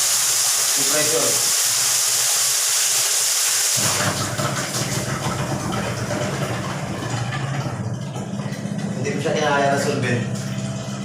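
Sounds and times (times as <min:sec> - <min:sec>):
low steady hum: 0:05.5 - 0:11.0.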